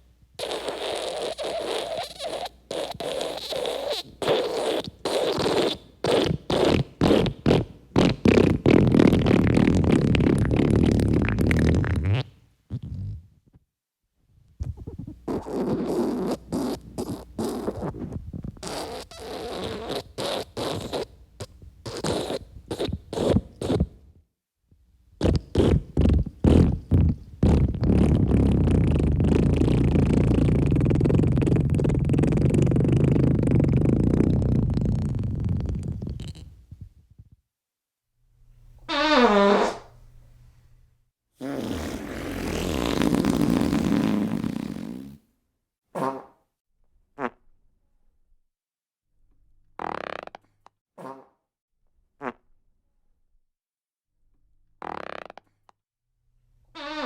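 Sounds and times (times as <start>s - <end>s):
spluttering farts: 0.4s - 13.3s, 14.6s - 24.0s, 25.2s - 36.6s, 38.9s - 39.9s, 41.4s - 45.3s, 46.0s - 46.4s, 47.2s - 47.4s, 49.8s - 51.4s, 52.2s - 52.4s, 54.8s - 55.5s, 56.8s - 57.0s.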